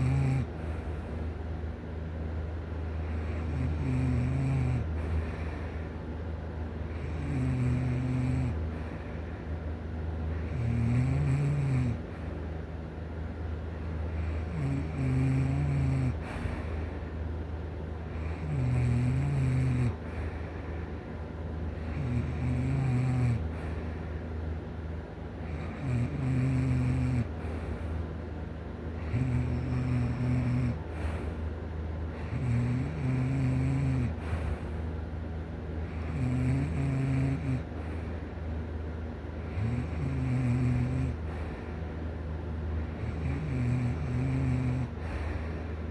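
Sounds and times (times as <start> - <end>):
person snoring: 0.0 - 0.8, 3.1 - 5.6, 6.9 - 8.7, 10.4 - 12.1, 14.2 - 16.7, 18.1 - 20.3, 21.8 - 23.8, 25.5 - 27.6, 29.0 - 31.3, 32.2 - 34.5, 35.9 - 37.7, 39.4 - 41.5, 43.0 - 45.4
steady low hum: 0.0 - 45.9.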